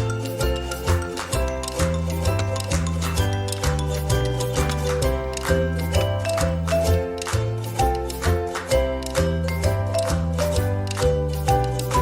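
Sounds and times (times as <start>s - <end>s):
instrumental music with beat and bass: 0.0s - 12.0s.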